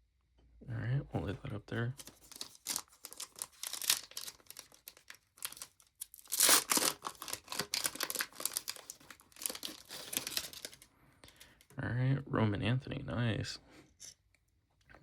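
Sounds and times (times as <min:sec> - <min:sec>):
plastic wrapper crinkling and tearing: 0:01.9 - 0:11.6.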